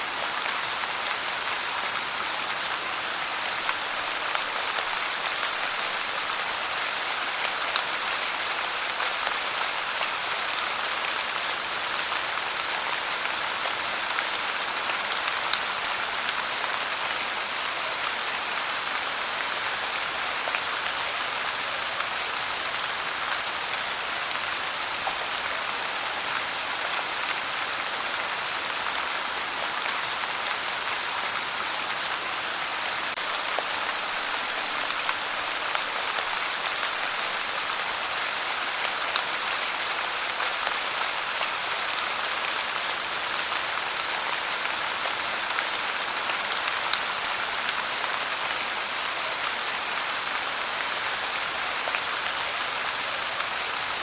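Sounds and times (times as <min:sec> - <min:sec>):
pouring rain: 0:00.0 - 0:54.0.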